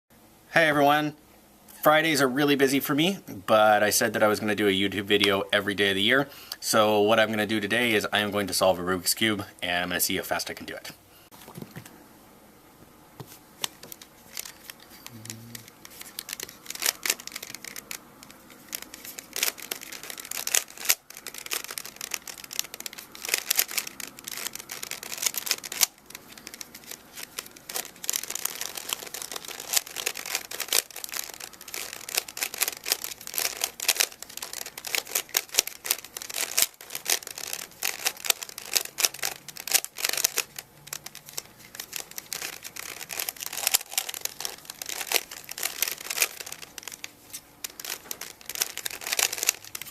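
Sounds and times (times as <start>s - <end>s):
puzzle cube clicking: 13.6s - 49.9s.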